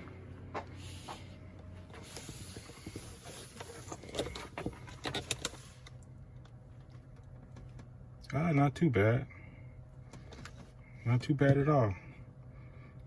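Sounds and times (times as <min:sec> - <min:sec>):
low steady hum: 0:00.0 - 0:13.0
handling clicks and rustles: 0:01.5 - 0:08.0.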